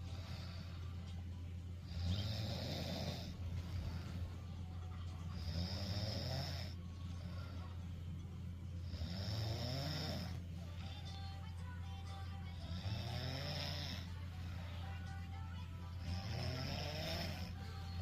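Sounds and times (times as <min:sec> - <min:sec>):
steady low hum: 0:00.0 - 0:18.0
person snoring: 0:01.8 - 0:04.2, 0:05.3 - 0:07.6, 0:08.8 - 0:11.0, 0:12.6 - 0:15.0, 0:16.0 - 0:18.0.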